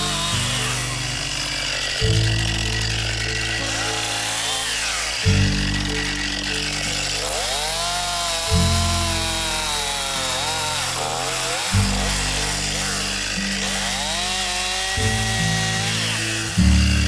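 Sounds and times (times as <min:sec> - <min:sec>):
background music with low notes: 0:00.0 - 0:17.0
chainsaw cutting wood: 0:00.0 - 0:17.0.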